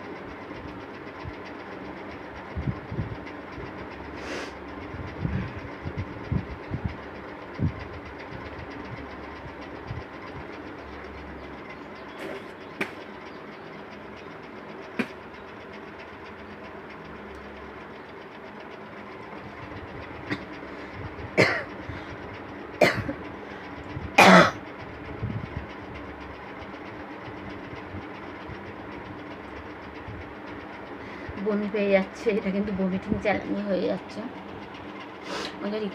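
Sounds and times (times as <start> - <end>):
electric fan humming: 0.0 - 35.9
person coughing: 21.4 - 21.7, 22.8 - 23.1, 24.2 - 24.6.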